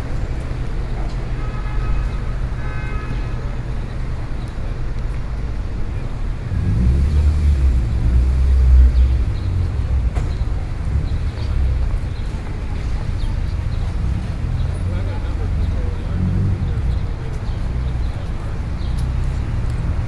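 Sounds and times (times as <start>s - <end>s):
road traffic rumble: 0.0s - 20.0s
vehicle passing close: 5.6s - 12.7s.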